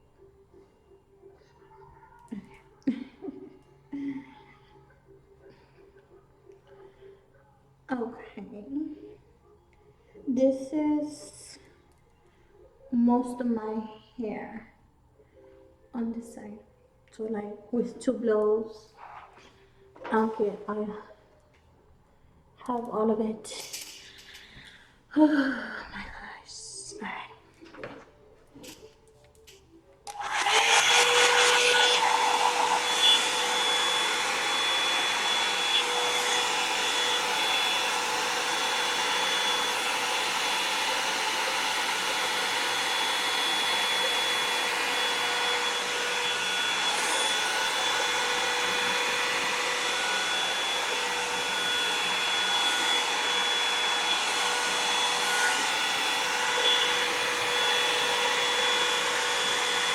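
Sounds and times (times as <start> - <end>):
hair dryer blowing with whine: 30.1 - 59.9.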